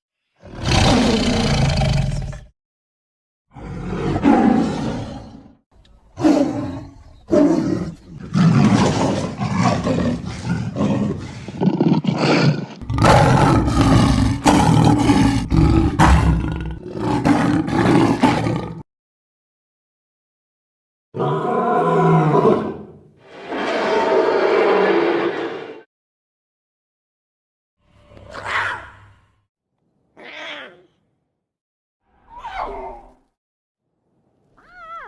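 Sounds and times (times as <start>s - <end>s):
cartoon lion roars and growls: 0.4s - 2.5s, 3.5s - 5.6s, 6.2s - 18.8s, 21.2s - 25.9s, 32.1s - 33.3s.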